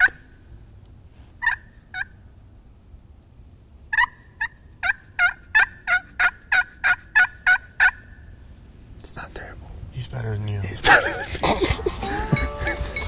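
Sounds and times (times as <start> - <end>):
turkey call yelps: 0.0 - 0.3, 1.4 - 2.2, 3.9 - 8.2.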